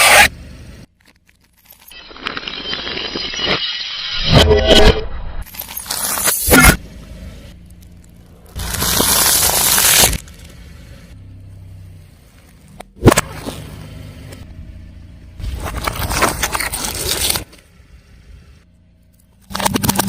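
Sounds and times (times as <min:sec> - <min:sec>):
car engine running low: 0:05.5 - 0:20.0.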